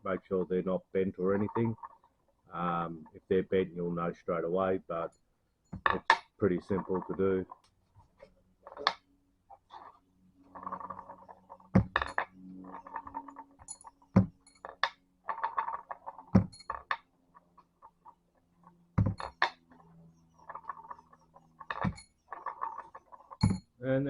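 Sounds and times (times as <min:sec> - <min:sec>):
metal rods rolling and rattling: 0:01.0 - 0:02.9, 0:05.7 - 0:23.8
metallic clinks: 0:10.5 - 0:18.2, 0:19.0 - 0:23.8.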